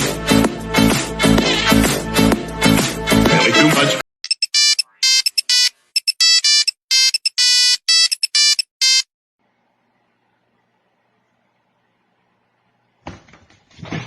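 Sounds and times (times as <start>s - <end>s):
high-pitched electronic beeps: 4.2s - 9.1s.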